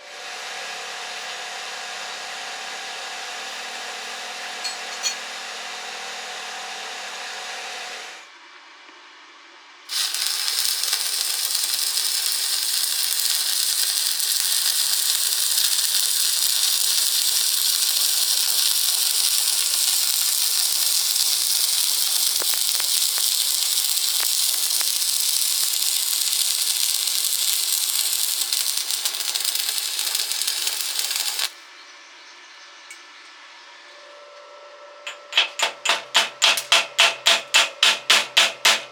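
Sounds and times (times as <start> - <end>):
arc welding hiss and crackle: 9.9 - 31.6.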